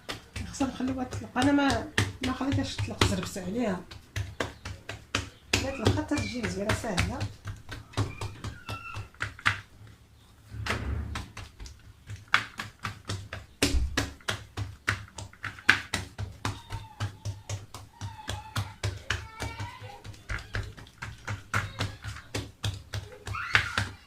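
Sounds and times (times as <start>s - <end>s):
hands patting pizza dough: 0.0s - 9.8s, 10.6s - 24.0s.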